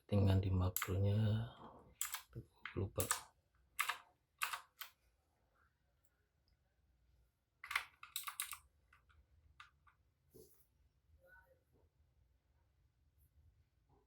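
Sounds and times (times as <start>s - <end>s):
mechanical keyboard clicking: 2.0s - 2.3s, 3.0s - 3.2s, 3.8s - 4.9s, 7.6s - 8.6s.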